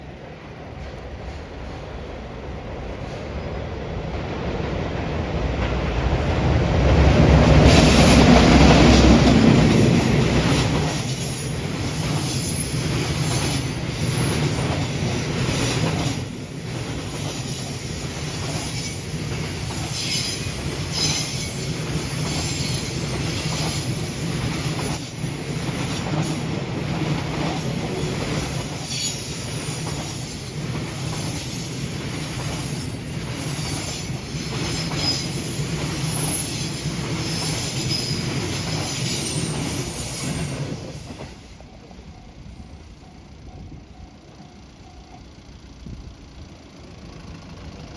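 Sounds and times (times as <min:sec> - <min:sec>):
electric locomotive passing: 0:00.0 - 0:47.9
high-pitched wheel squeals: 0:17.1 - 0:24.6, 0:28.0 - 0:40.6.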